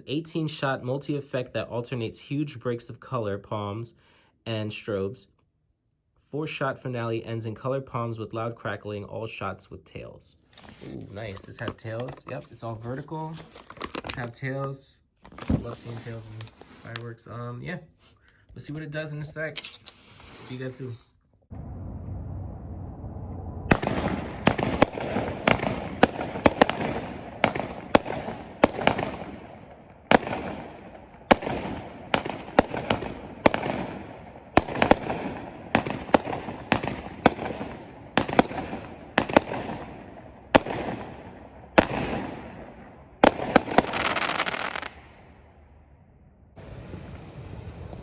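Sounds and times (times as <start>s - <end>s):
firework fuse hiss: 19.6s - 20.8s, 46.6s - 48.0s
firework shots: 21.5s - 45.4s, 46.6s - 48.0s
firework crackling: 21.6s - 29.4s, 31.3s - 39.8s, 43.2s - 45.0s, 46.6s - 48.0s.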